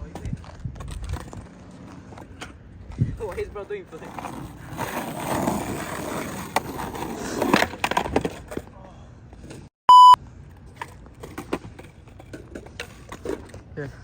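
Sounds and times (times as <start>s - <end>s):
skateboard wheels rolling: 0.0s - 9.7s, 10.4s - 14.0s
short electronic bleep: 9.9s - 10.2s.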